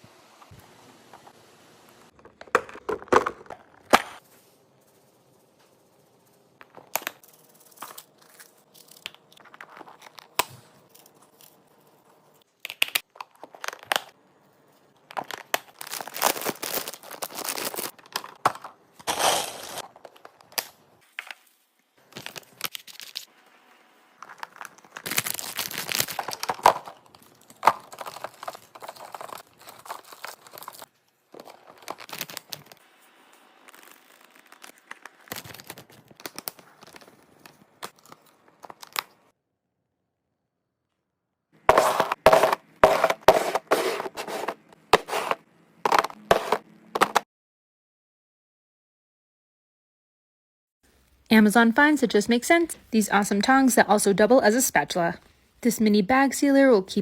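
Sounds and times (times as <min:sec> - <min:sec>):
packaging crinkling and tearing: 0:15.1 - 0:18.4, 0:19.0 - 0:20.7, 0:22.0 - 0:23.3, 0:24.2 - 0:39.2.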